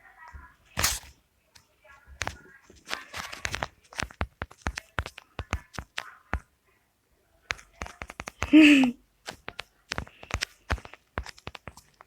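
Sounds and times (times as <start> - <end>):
sharp irregular clicks and taps: 3.4 - 6.5, 7.5 - 8.6, 9.2 - 12.0.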